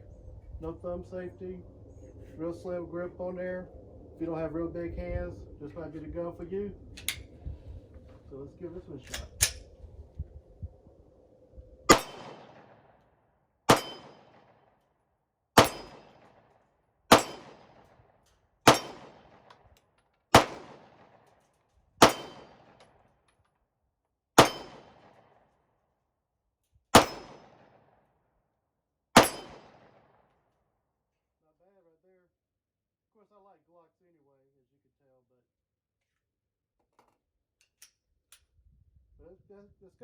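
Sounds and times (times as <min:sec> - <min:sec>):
metallic ring of steel target: 0:11.9 - 0:12.4, 0:13.7 - 0:14.3, 0:15.6 - 0:16.2, 0:17.1 - 0:17.6, 0:18.7 - 0:19.2, 0:22.0 - 0:22.7, 0:24.4 - 0:25.0, 0:27.0 - 0:27.4, 0:29.2 - 0:29.8
pistol shots: 0:11.9 - 0:12.9, 0:13.7 - 0:14.6, 0:15.6 - 0:16.4, 0:17.1 - 0:17.9, 0:18.6 - 0:19.7, 0:20.3 - 0:21.2, 0:22.0 - 0:22.9, 0:24.4 - 0:25.3, 0:27.0 - 0:27.8, 0:29.2 - 0:30.2.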